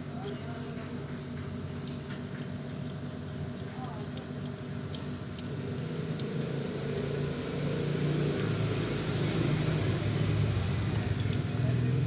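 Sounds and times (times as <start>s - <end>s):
vehicle engine rumble: 5.1s - 12.0s.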